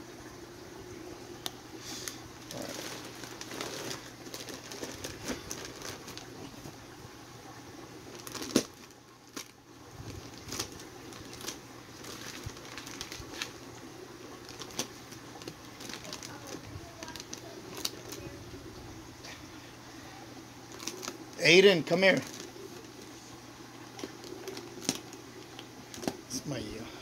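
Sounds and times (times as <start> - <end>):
plastic packaging crinkling: 2.0 - 6.8, 8.0 - 18.4, 20.6 - 26.3.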